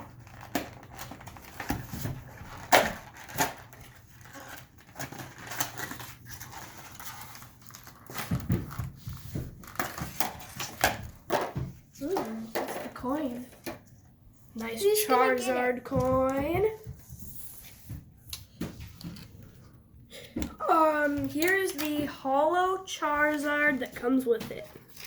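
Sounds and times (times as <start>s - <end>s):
packaging being torn open: 2.5s - 8.3s.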